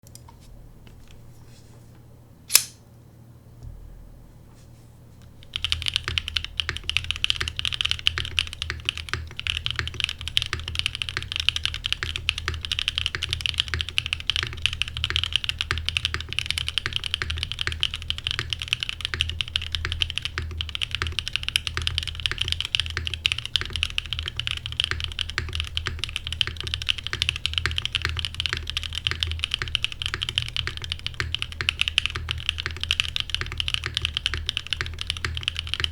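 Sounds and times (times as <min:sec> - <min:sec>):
sharp click: 0:02.5 - 0:02.8
fast typing on mechanical keyboard: 0:05.4 - 0:35.9.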